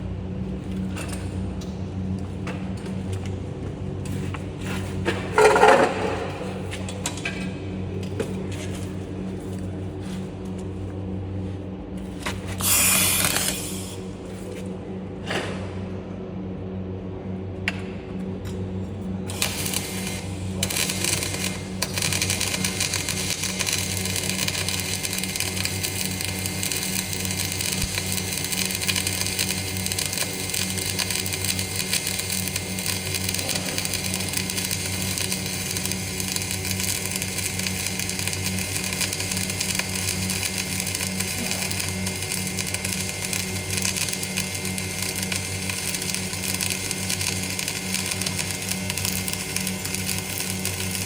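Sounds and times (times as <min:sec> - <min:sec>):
welding machine buzz: 0:04.0 - 0:07.5, 0:11.4 - 0:14.7, 0:19.0 - 0:51.0
welding arc crackling hiss: 0:12.0 - 0:14.1, 0:19.3 - 0:51.0.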